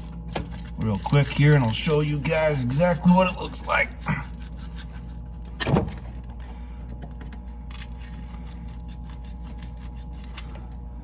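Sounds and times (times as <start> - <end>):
steady low hum: 0.0 - 11.0
sandpaper scratching metal rod: 0.8 - 5.2.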